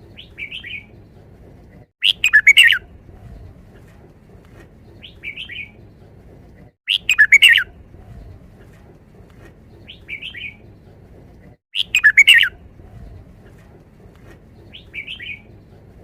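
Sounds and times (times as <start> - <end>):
bulbul singing: 2.0 - 3.0, 6.9 - 8.2, 11.8 - 12.8, 14.7 - 15.5.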